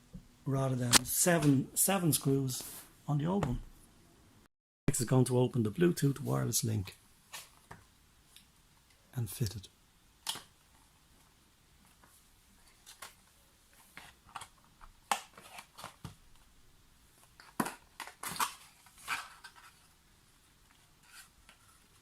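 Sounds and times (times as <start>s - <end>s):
package being opened: 17.4s - 19.7s.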